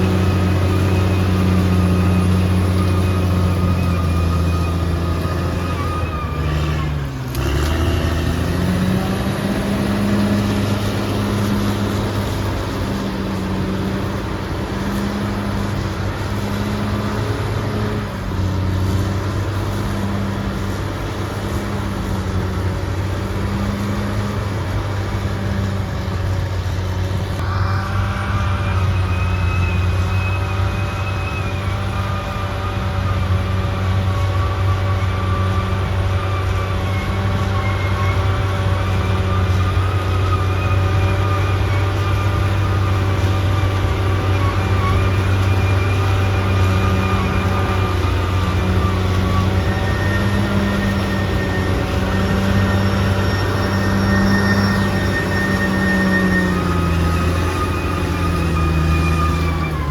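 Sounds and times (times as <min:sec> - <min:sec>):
bulldozer diesel engine: 0:00.0 - 0:59.9
high-pitched whine: 0:27.2 - 0:59.9.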